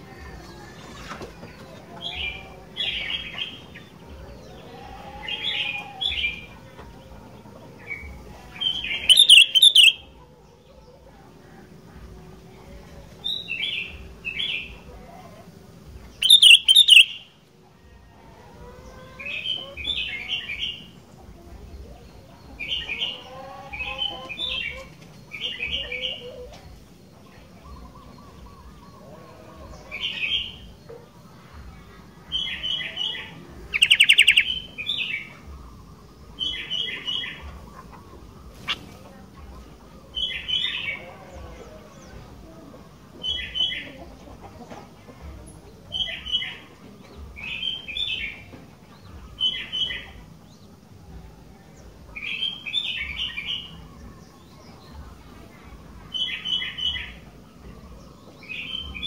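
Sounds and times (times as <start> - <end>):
bulbul singing warbled phrases: 7.7 - 10.2, 12.4 - 17.4, 31.8 - 44.2, 51.7 - 59.0.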